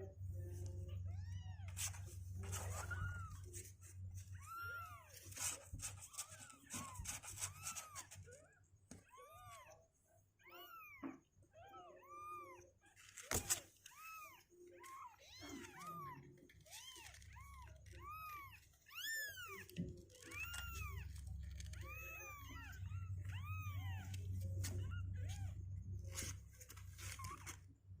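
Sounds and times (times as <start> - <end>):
kittens mewing: 10.4 - 27.7.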